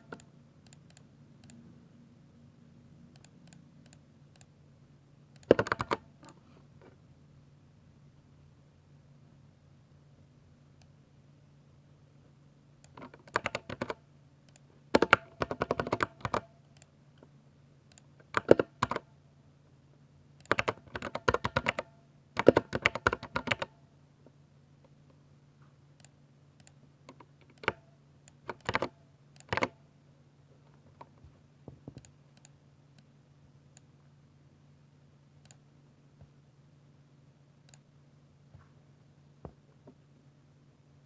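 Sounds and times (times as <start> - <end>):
faint low hum: 0.0 - 41.0
mechanical keyboard typing: 5.4 - 6.4, 12.9 - 16.9, 17.9 - 19.1, 20.4 - 23.8, 26.6 - 29.8.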